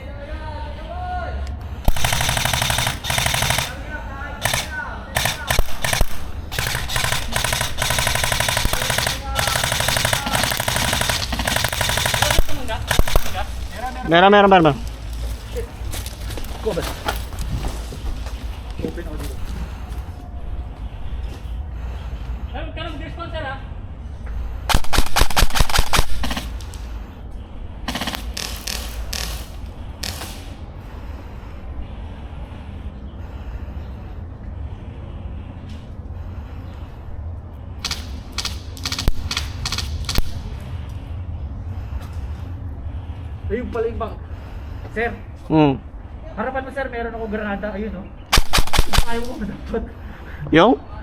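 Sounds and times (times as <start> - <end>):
soft noisy bursts: 0.0 - 51.0
airsoft guns firing full-auto: 1.8 - 14.1, 24.7 - 26.9, 27.9 - 30.6, 37.8 - 40.4, 48.3 - 49.4.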